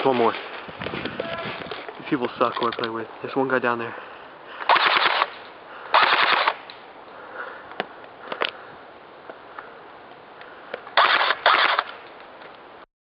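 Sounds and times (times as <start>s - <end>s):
airsoft rifle bursts: 4.6s - 6.6s, 11.0s - 12.0s.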